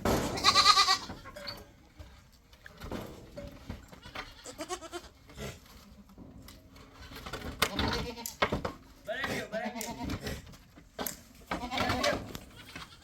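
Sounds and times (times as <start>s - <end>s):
goats bleating: 0.4s - 1.4s, 3.9s - 5.4s, 7.0s - 8.4s, 9.2s - 10.4s, 11.4s - 13.0s.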